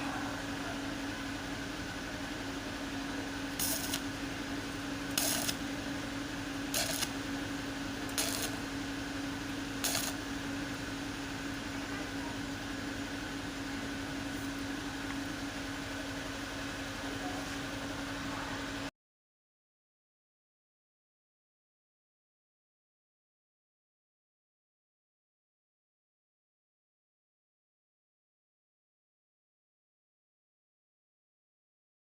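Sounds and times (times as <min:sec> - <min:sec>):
steady mechanical hum: 0:00.0 - 0:18.9
short sharp noisy strokes: 0:03.6 - 0:04.1, 0:05.1 - 0:05.6, 0:06.7 - 0:07.2, 0:08.1 - 0:08.6, 0:09.8 - 0:10.2.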